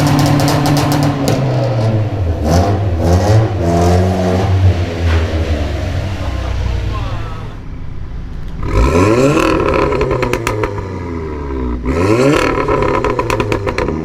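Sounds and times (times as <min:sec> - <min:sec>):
engine revving hard: 0:00.0 - 0:07.5, 0:08.6 - 0:14.0
exhaust pops crackling: 0:08.3 - 0:10.9, 0:12.4 - 0:14.0.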